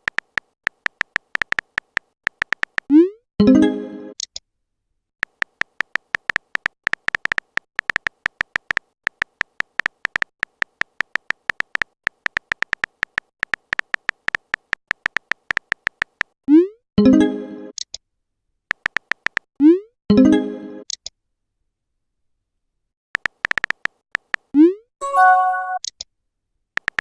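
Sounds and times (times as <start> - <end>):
keyboard typing clicks: 0.0 - 3.0, 5.2 - 16.4, 18.7 - 19.5, 23.2 - 24.5, 26.8 - 27.0
message tone: 25.0 - 25.8.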